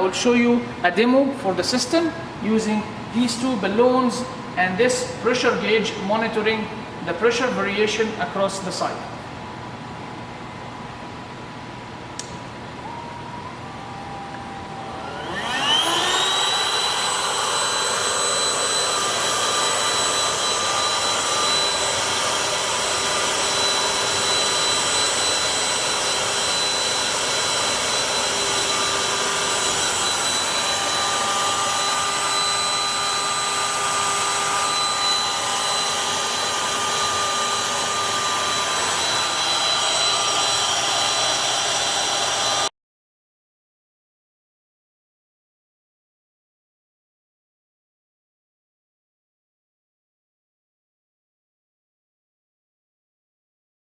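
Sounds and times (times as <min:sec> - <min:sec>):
air compressor whining: 0:12.1 - 0:42.7.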